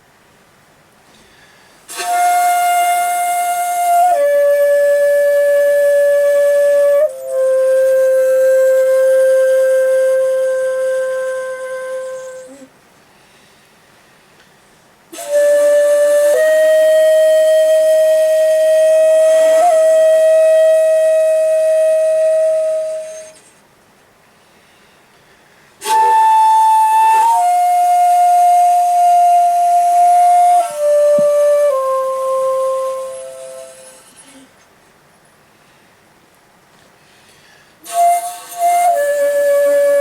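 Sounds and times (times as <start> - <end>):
bamboo flute playing slow phrases: 1.9 - 12.8, 15.1 - 23.6, 25.8 - 34.6, 37.8 - 40.0.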